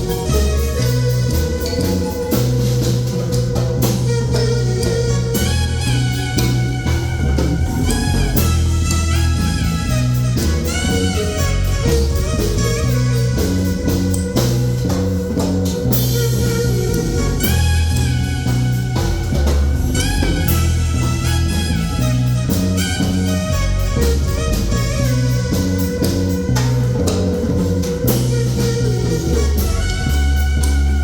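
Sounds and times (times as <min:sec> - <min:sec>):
melody line: 0:00.0 - 0:14.6
bass: 0:00.0 - 0:31.0
drum kit beat: 0:00.0 - 0:31.0
guitar: 0:00.0 - 0:31.0.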